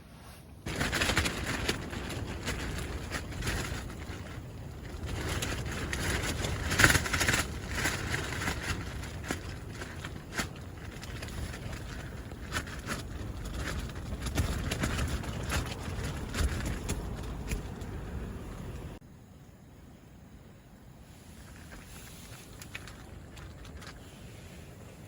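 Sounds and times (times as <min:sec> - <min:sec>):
wind buffeting microphone: 0:00.6 - 0:19.0
rustle: 0:21.0 - 0:25.0.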